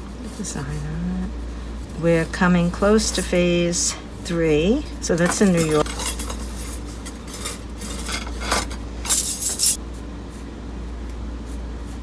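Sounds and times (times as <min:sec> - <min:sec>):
steady low hum: 0:00.0 - 0:12.0
ceramic objects clinking: 0:05.2 - 0:09.8.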